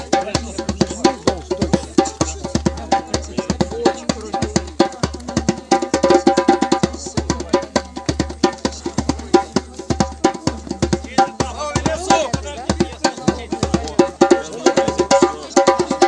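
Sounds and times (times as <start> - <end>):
fast drumming: 0.0 - 16.0.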